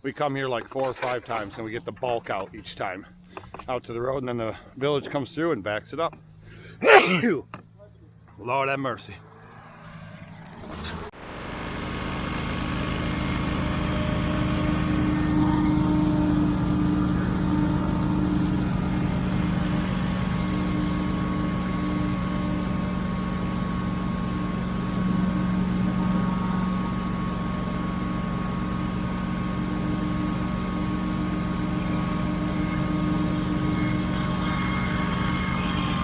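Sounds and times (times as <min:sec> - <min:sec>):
debris blower engine drone: 0:10.4 - 0:36.0
high fan whine: 0:11.2 - 0:36.0.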